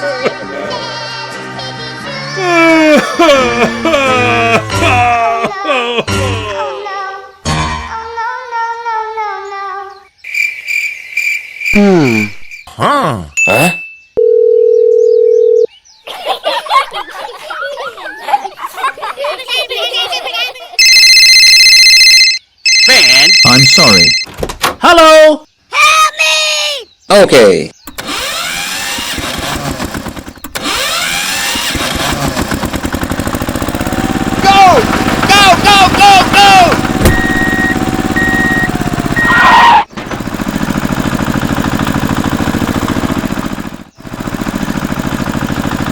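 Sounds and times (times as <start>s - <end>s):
engine running: 2.4s - 6.6s, 27.9s - 45.9s
babble of voices: 2.4s - 6.8s
wavering pitched voice: 2.4s - 6.9s, 11.8s - 13.9s
steady dial tone: 14.2s - 15.7s, 20.8s - 24.2s, 37.1s - 39.3s
high pulsing beep: 37.0s - 39.5s.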